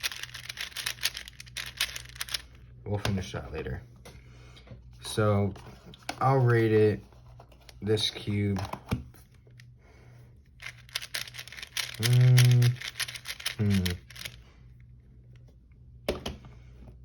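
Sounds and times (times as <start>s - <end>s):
speed cube layers clicking: 0.0s - 2.4s, 10.6s - 14.4s
person humming: 12.0s - 12.9s, 13.6s - 14.0s.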